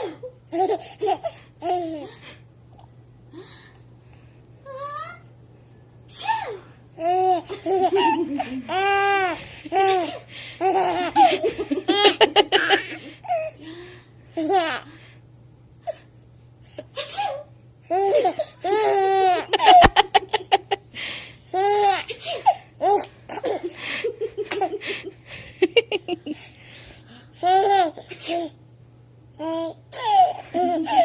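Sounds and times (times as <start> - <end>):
baby laughing: 7.0 - 13.5, 17.9 - 20.8, 30.0 - 31.0.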